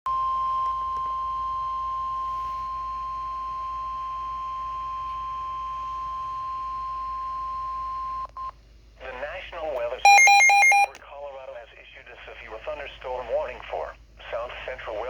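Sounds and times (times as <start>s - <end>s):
steady high alarm beep: 10.1s - 11.0s.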